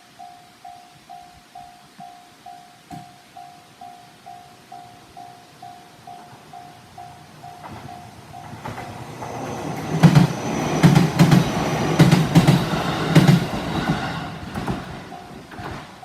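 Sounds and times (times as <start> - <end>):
crossing warning bell ringing: 0.0 - 16.0
electric train running: 4.7 - 16.0
wheels thumping over rail joints: 7.6 - 16.0.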